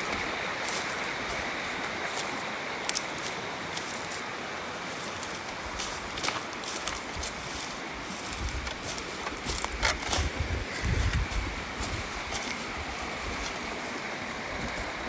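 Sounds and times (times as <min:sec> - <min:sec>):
river water rushing: 0:00.0 - 0:15.0
wind buffeting microphone: 0:05.6 - 0:15.0.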